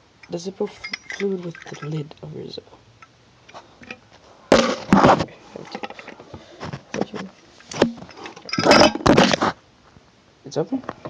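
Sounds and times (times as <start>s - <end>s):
metal lid prying open can: 3.8s - 5.1s.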